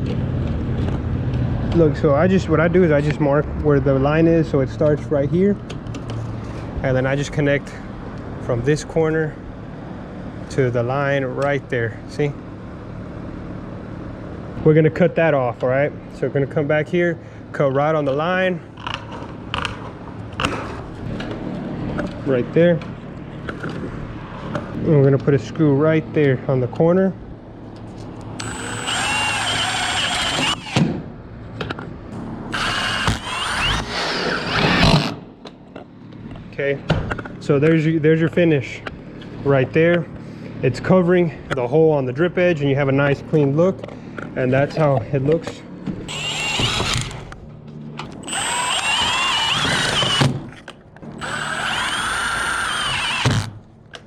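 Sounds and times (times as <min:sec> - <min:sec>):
cordless drill whining: 0:28.4 - 0:30.8, 0:32.5 - 0:35.1, 0:46.1 - 0:47.3, 0:48.2 - 0:50.4, 0:51.1 - 0:53.6
power screwdriver driving screws: 0:28.4 - 0:30.9, 0:32.5 - 0:35.2, 0:46.1 - 0:47.3, 0:48.2 - 0:50.4, 0:51.1 - 0:53.6.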